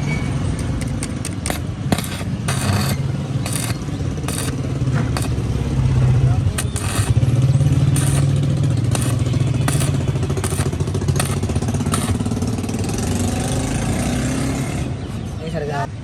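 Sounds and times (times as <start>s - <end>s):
motorcycle engine idling: 3.1s - 13.1s.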